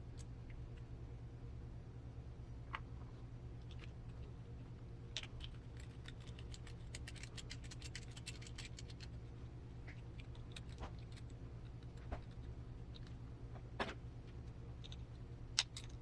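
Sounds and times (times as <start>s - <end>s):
steady low hum: 0.0s - 16.0s
small plastic and metal parts clicking: 5.2s - 9.2s, 14.8s - 16.0s.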